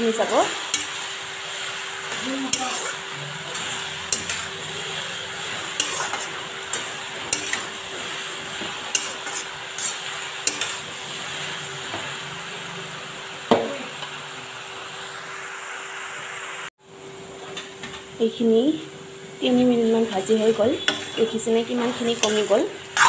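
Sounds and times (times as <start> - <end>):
light frying sizzle: 0.0 - 23.0.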